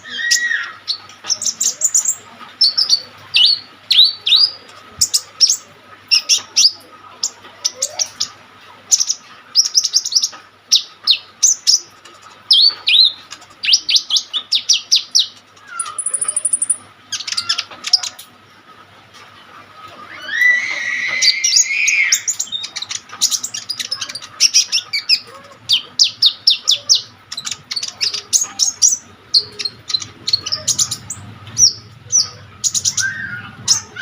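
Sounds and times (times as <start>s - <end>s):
high fast bird trill: 12.5s - 18.1s, 20.1s - 34.0s
sunbird chirping: 12.5s - 18.1s.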